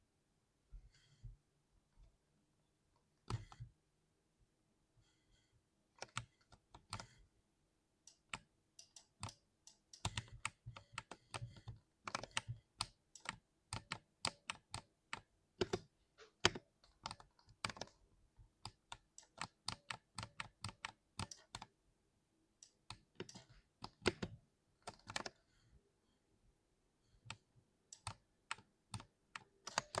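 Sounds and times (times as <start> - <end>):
mechanical keyboard typing: 6.0 - 7.2, 8.1 - 18.0, 18.6 - 21.7, 22.7 - 25.4, 27.2 - 30.0.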